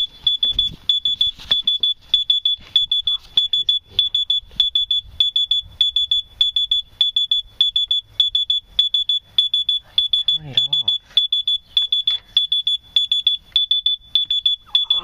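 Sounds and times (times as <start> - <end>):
smoke alarm beeping: 0.0 - 15.0.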